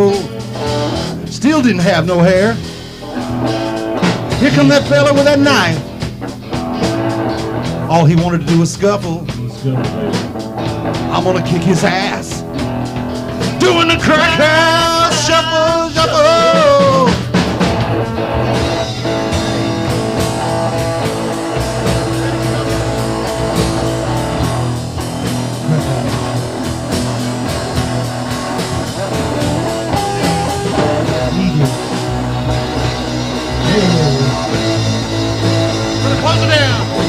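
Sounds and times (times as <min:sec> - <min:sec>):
drum kit beat: 0:00.0 - 0:37.0
rock guitar: 0:00.0 - 0:37.0.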